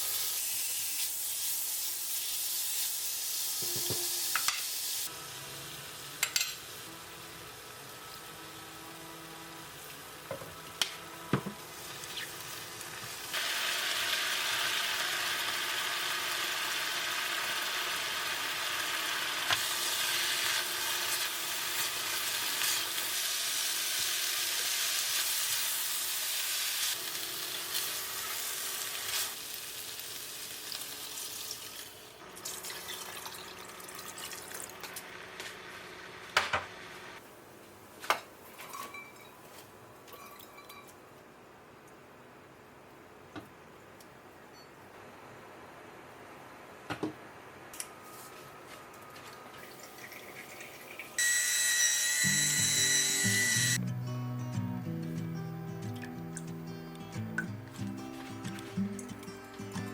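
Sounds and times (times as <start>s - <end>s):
food sizzling in a frying pan: 0.0s - 8.8s, 11.5s - 37.2s, 49.6s - 53.8s.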